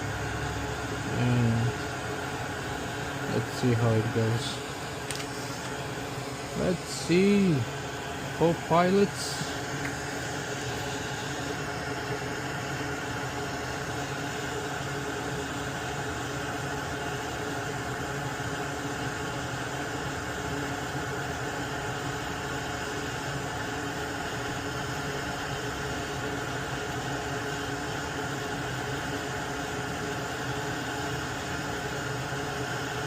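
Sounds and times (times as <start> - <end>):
electric blower whirring: 0.0 - 18.3.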